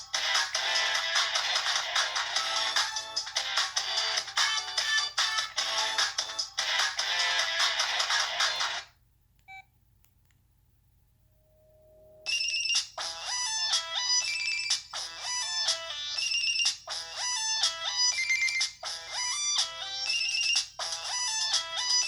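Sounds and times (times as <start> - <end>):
phone ringtone melody: 12.3 - 22.0.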